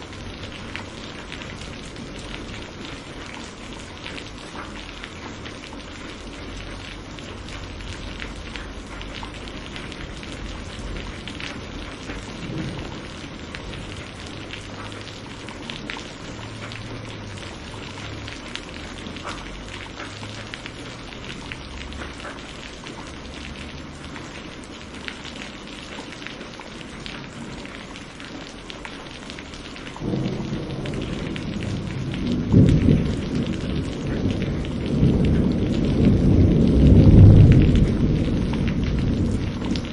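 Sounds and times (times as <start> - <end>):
steady rain: 0.0 - 39.9
low rumble of thunder: 4.8 - 22.2, 29.9 - 39.9.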